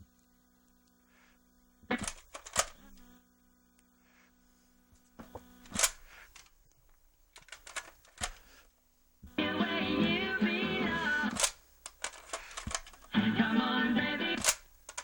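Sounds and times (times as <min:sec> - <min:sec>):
steady hum: 0:00.0 - 0:15.0
music playing from tape: 0:09.3 - 0:11.5, 0:13.1 - 0:14.6
cartridge clacking in tape player: 0:14.3 - 0:15.0.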